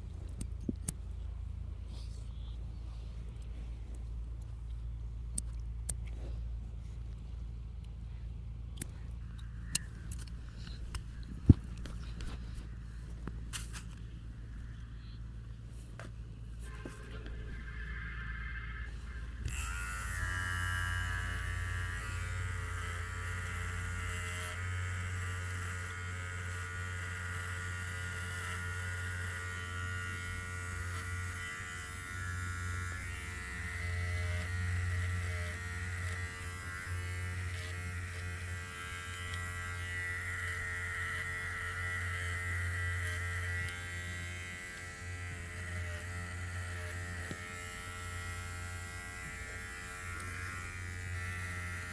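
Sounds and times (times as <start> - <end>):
electric hair clipper buzzing: 16.8 - 51.9.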